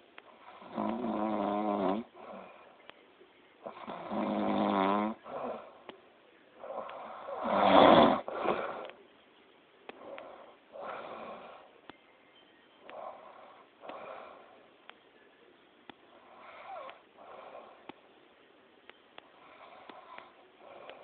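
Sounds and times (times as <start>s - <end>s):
loud snoring: 0.4s - 2.5s, 3.7s - 5.8s, 6.6s - 8.9s, 10.0s - 11.6s.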